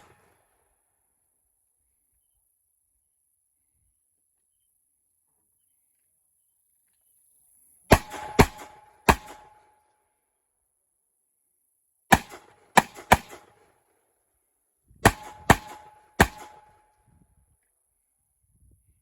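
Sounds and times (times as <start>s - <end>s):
gunshots with echo: 7.9s - 9.6s, 12.1s - 13.5s, 15.0s - 16.7s.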